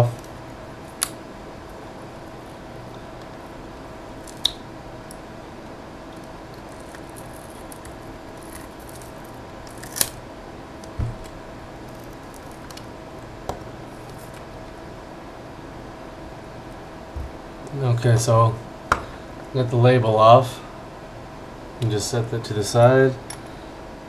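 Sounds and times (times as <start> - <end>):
steady hum: 0.0 - 24.0
short low thump: 11.0 - 11.2.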